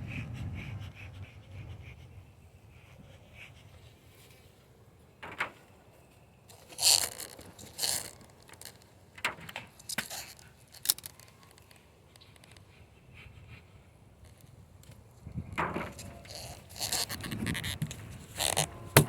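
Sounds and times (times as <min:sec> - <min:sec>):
wooden hive parts scraping and cracking: 0:06.5 - 0:12.6, 0:14.3 - 0:19.0.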